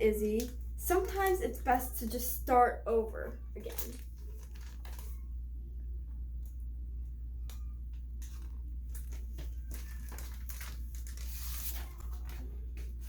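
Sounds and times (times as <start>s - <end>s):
steady low hum: 0.0s - 13.0s
paper pages rustling: 3.6s - 5.3s, 8.2s - 13.0s.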